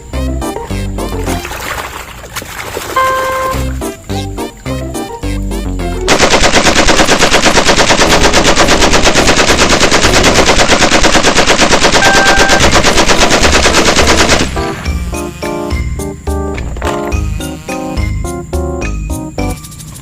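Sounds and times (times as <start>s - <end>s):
background music: 0.0s - 1.7s, 3.0s - 6.1s, 12.1s - 20.0s
rapid automatic gunfire: 6.1s - 14.8s.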